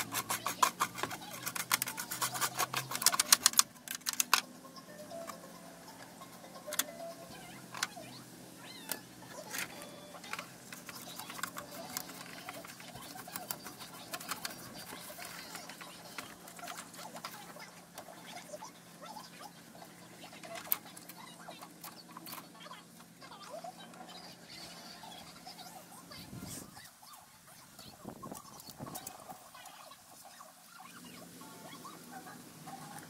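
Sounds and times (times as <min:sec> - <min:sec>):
inkjet printer rapid clicking: 0:00.0 - 0:04.4, 0:08.7 - 0:24.6
faint clicks and squeaks: 0:00.0 - 0:33.0.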